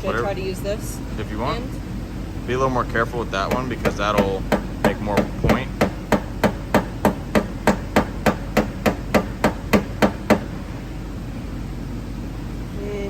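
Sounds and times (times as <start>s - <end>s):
hammer tapping sheet metal: 3.5s - 10.5s.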